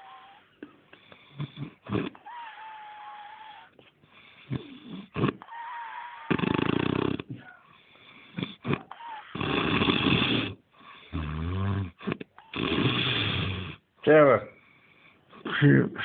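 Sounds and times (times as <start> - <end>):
man snoring loudly: 6.2 - 7.3, 8.4 - 12.0, 12.6 - 13.8.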